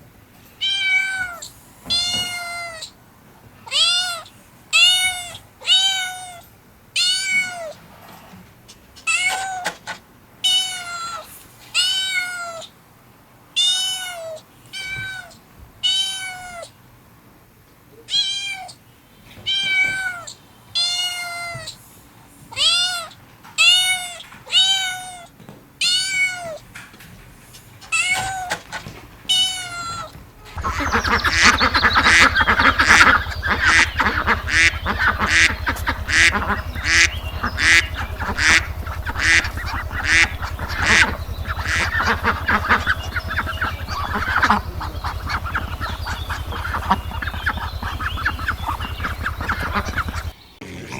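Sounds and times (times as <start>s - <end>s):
cat meowing: 0.6s - 2.9s, 7.0s - 7.8s, 13.6s - 16.7s, 18.1s - 18.8s, 19.5s - 21.8s, 22.5s - 26.6s
low hum: 30.5s - 50.4s
waterfowl calling: 30.5s - 50.4s.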